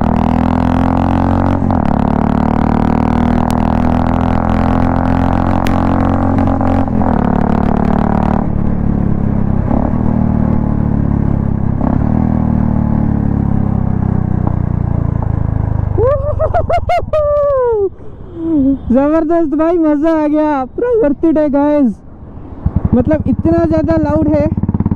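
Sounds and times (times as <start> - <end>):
exhaust crack: 0.0 - 12.8, 22.6 - 24.9
motorcycle engine running: 0.0 - 16.4, 22.6 - 24.9
person calling out: 17.1 - 22.0.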